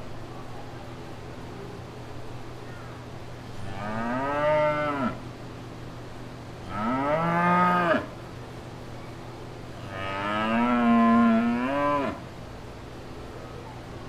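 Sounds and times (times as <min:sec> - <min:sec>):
steady low hum: 0:00.0 - 0:14.0
cow mooing: 0:03.6 - 0:05.2, 0:09.8 - 0:12.2.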